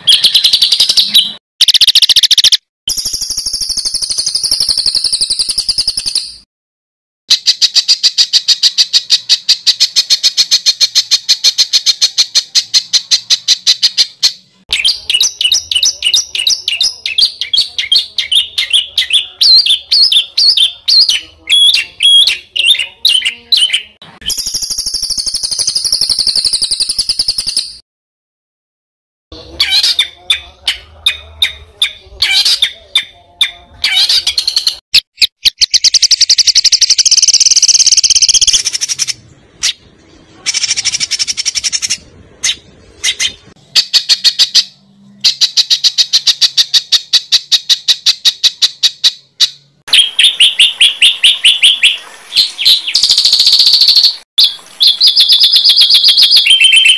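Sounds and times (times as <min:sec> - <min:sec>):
songbirds singing: 0:07.3 - 0:27.8, 0:35.4 - 0:56.9.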